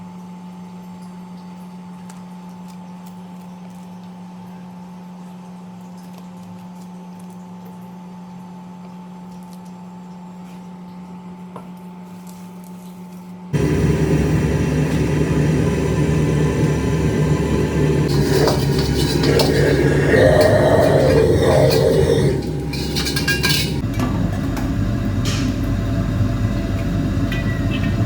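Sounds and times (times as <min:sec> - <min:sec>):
low electrical hum: 0:12.6 - 0:28.0
wok stir-frying roar: 0:13.6 - 0:28.0.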